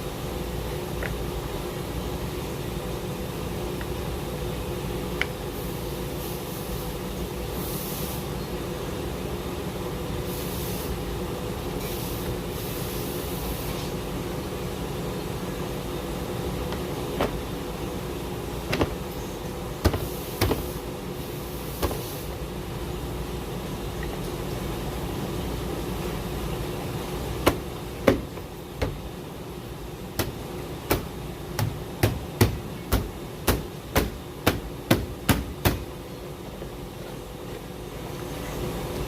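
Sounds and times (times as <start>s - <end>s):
low mechanical hum: 0.0s - 39.0s.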